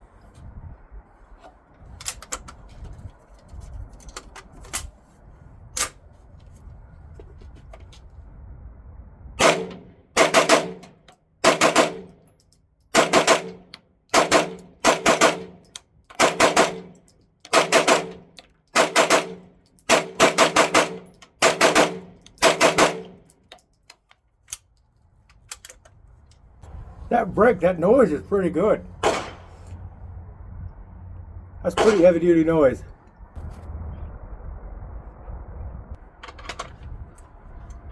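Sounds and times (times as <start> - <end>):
low rumble: 0.0 - 4.0, 5.2 - 10.9, 25.8 - 37.9
rapid gunshots: 9.4 - 10.8, 11.4 - 12.1, 16.2 - 16.8, 17.6 - 18.2, 18.8 - 23.0
faint distant gunshots: 29.0 - 29.6.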